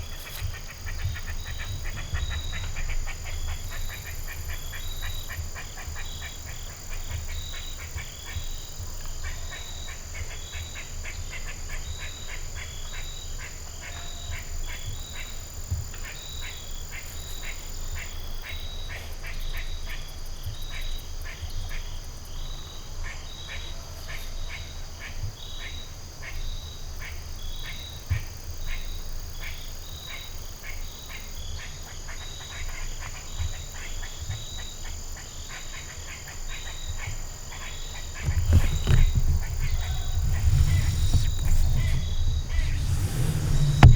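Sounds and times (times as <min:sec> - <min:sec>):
brief loud thump: 0:38.3 - 0:43.9
low rumble: 0:38.7 - 0:43.9.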